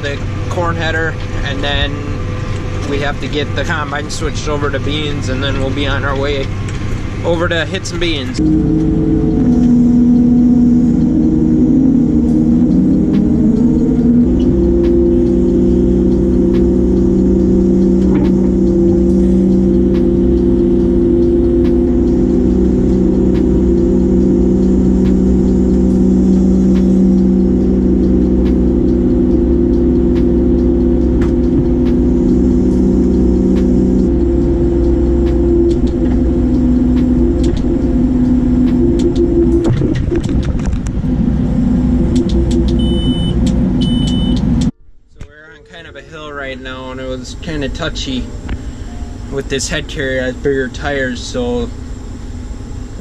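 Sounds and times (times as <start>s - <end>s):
combine harvester running: 0.0s - 53.0s.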